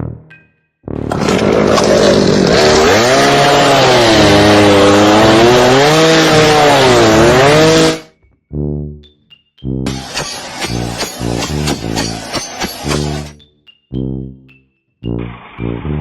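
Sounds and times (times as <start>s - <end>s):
power tool running hard: 1.1s - 8.0s, 9.9s - 13.3s.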